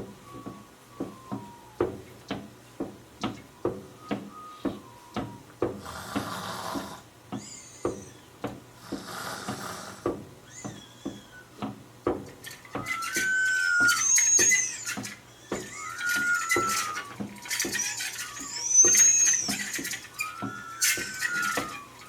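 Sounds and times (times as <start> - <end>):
short high squeaks: 4.0 - 5.5, 10.4 - 11.5, 12.4 - 22.0
hissing: 12.7 - 22.0.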